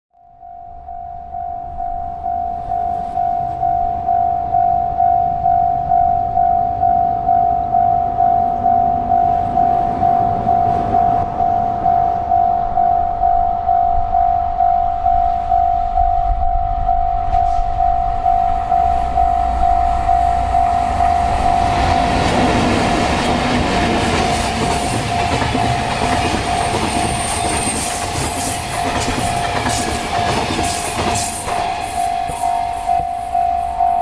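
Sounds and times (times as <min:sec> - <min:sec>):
level crossing warning bell: 0:00.2 - 0:34.0
train wheels clattering over rail joints: 0:21.8 - 0:32.8.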